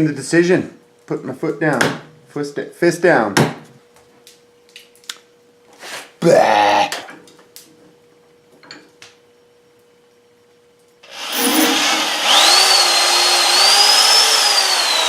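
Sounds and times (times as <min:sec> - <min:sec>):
power drill whining: 0:11.0 - 0:15.0.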